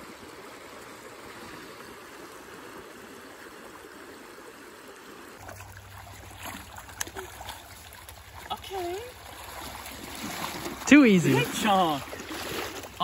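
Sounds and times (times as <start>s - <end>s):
water rushing over stones: 5.3s - 13.0s.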